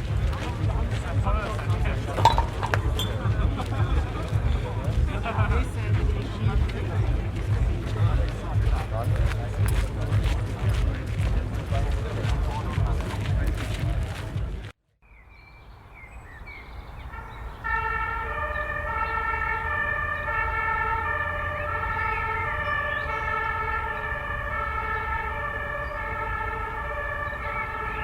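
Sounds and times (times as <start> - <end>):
two-tone emergency siren: 1.4 - 3.3, 17.1 - 28.0.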